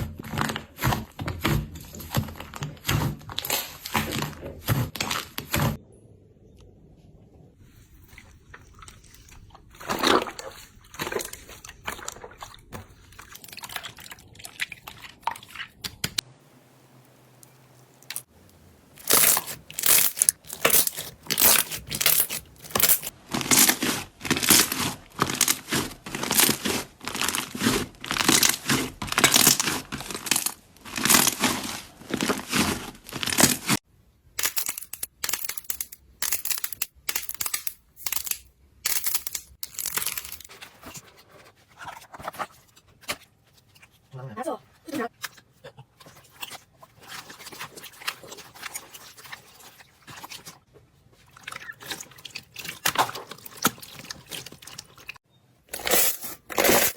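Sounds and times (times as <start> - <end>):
crunchy slime crackling: 17.3 - 33.8.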